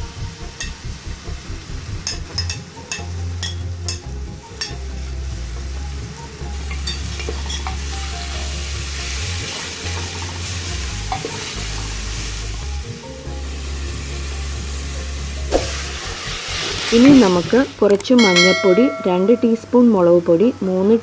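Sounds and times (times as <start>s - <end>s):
onions sizzling in oil: 0.0s - 21.0s
spoon clicking against pot: 2.1s - 4.8s.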